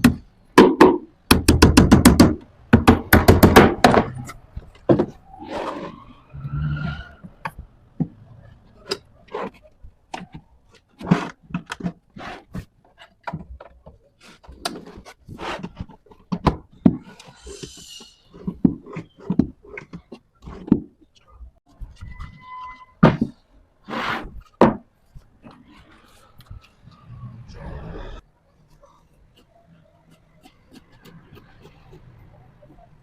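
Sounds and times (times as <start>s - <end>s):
wooden knocks and clacks: 0.0s - 5.2s, 8.8s - 17.3s.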